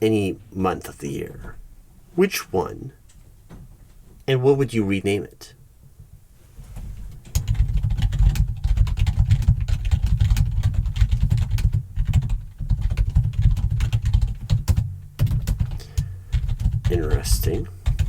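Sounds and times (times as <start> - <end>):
rapid keyboard typing: 7.3 - 18.0.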